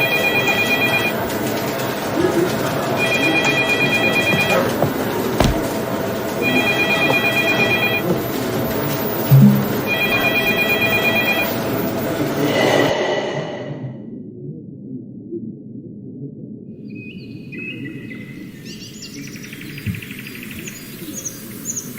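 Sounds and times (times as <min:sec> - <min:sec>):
electronic trilling ring tone: 0:00.0 - 0:01.1, 0:06.4 - 0:08.0, 0:09.3 - 0:11.6
busy background din: 0:00.0 - 0:13.0.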